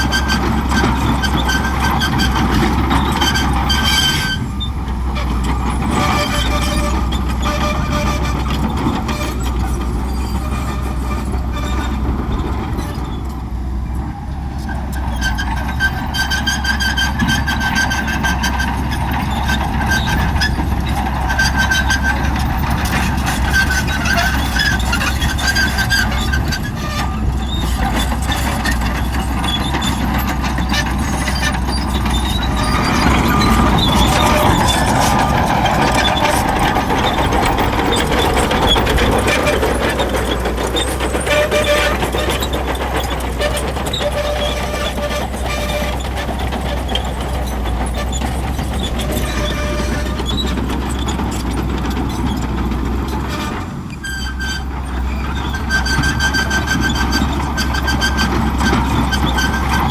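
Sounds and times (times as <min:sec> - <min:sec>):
bulldozer diesel engine running: 0:00.0 - 0:59.9
steel tracks clanking and squealing: 0:00.0 - 0:59.9.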